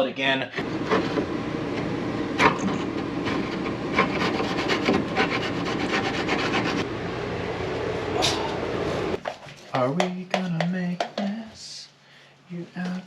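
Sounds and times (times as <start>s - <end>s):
scraping on wood: 2.4s - 6.8s.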